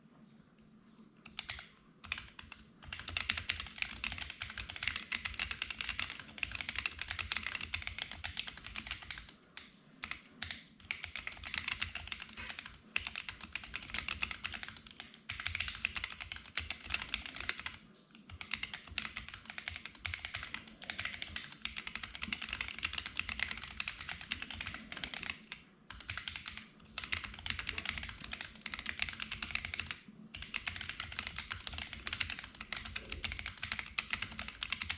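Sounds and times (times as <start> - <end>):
mechanical keyboard typing: 1.2 - 34.9.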